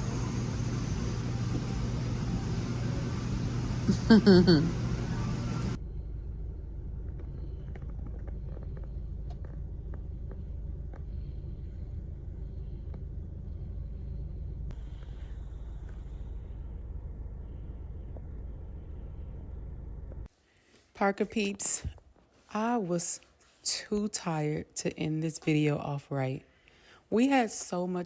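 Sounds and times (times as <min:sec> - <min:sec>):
low rumble: 0:00.0 - 0:20.3.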